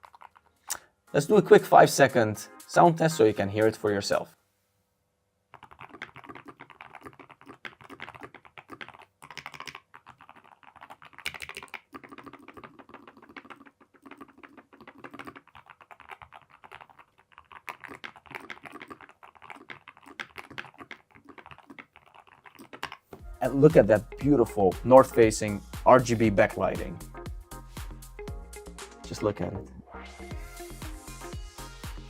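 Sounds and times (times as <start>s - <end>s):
typing on keyboard: 0.0s - 0.5s, 5.5s - 23.1s.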